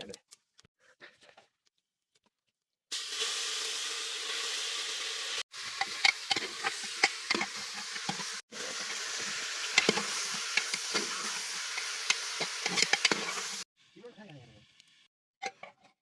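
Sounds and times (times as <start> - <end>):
curry sizzling in a pan: 2.9 - 13.7
spoon scraping a pan: 5.6 - 13.6.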